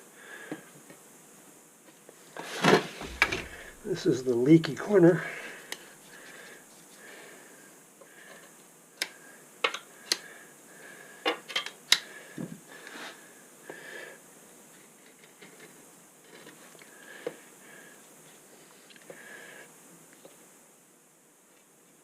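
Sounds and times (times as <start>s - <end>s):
clicks and taps on metal door: 3.0s - 4.0s.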